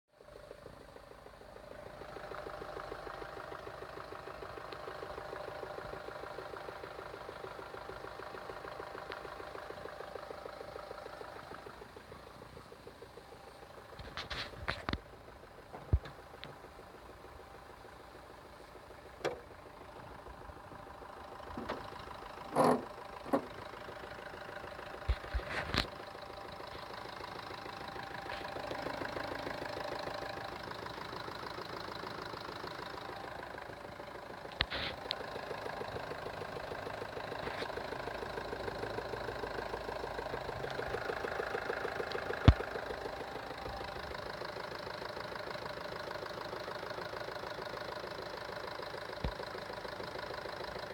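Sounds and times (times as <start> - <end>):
engine idling with knocking: 0.1 - 50.9
sharp clicks and thumps: 22.5 - 23.6.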